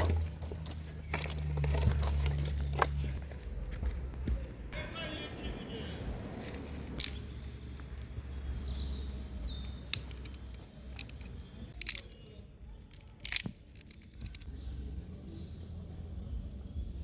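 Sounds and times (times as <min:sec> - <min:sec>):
rustling of things being handled: 0:00.0 - 0:04.6
sharp clicks: 0:09.6 - 0:14.5
low steady rumble: 0:13.6 - 0:17.0.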